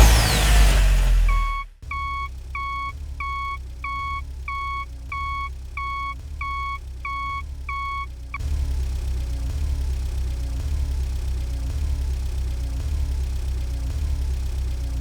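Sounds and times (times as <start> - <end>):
loud rumble: 0.0 - 2.0
electronic beeps: 1.3 - 8.1.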